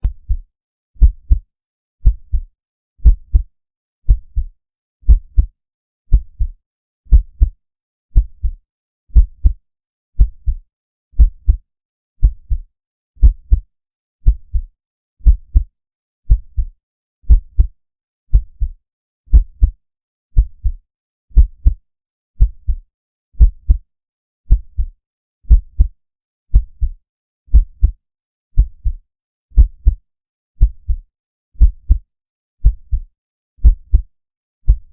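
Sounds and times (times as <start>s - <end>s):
heartbeat double thump: 0.0s - 0.4s, 1.0s - 1.4s, 2.0s - 3.5s, 5.1s - 5.5s, 7.1s - 7.6s, 13.2s - 13.6s, 14.2s - 15.7s, 17.3s - 17.7s, 19.3s - 19.8s, 21.4s - 21.8s, 23.4s - 23.8s, 25.5s - 25.9s, 27.5s - 28.0s, 29.6s - 30.0s, 31.6s - 32.0s, 33.6s - 34.0s.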